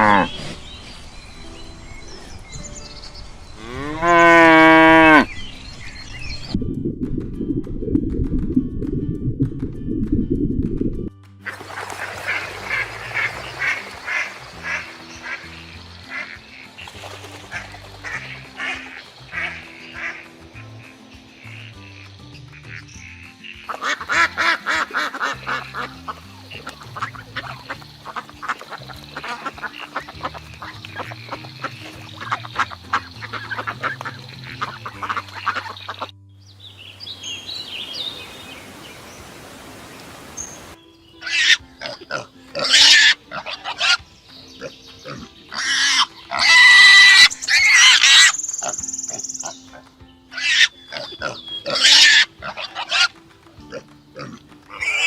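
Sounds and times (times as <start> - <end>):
ducks quacking: 0.0 - 0.6, 11.4 - 36.1, 41.2 - 44.0, 44.6 - 55.0
background music: 0.0 - 38.5, 40.4 - 55.0
pigs squealing and grunting: 41.2 - 44.0, 44.6 - 48.3, 50.4 - 53.1, 53.7 - 55.0.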